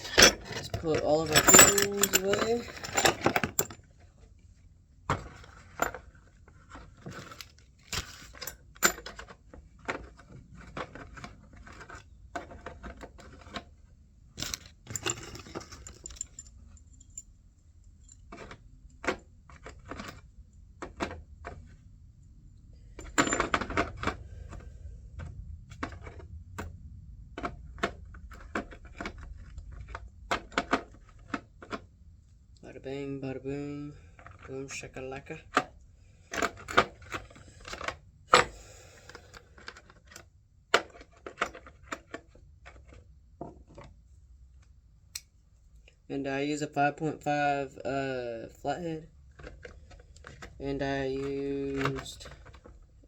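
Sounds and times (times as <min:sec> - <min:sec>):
metal hand tools clinking: 0:00.0 - 0:03.7.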